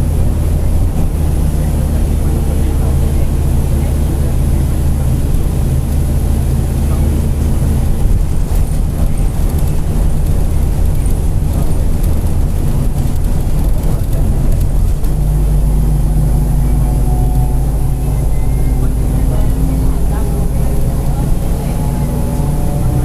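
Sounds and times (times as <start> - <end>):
bus diesel engine droning: 0.0 - 23.0
steady whine: 0.0 - 23.0.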